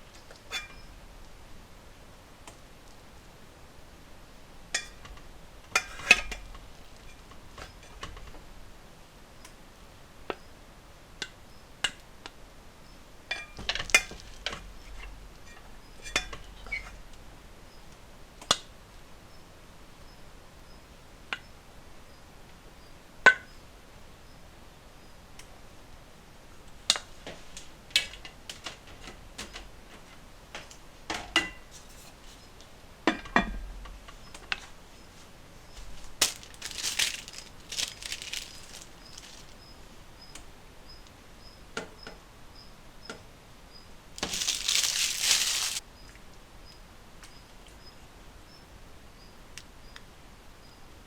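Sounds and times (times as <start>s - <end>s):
objects knocking and clinking: 36.2s - 39.6s, 44.2s - 45.8s.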